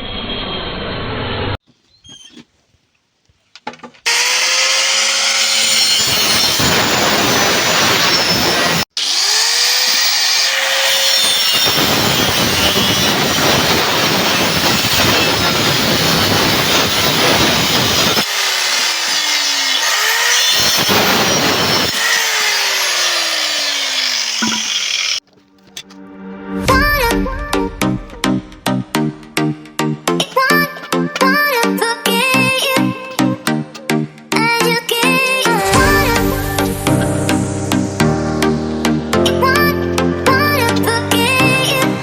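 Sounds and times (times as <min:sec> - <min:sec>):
power tool cutting: 0:04.1 - 0:25.2.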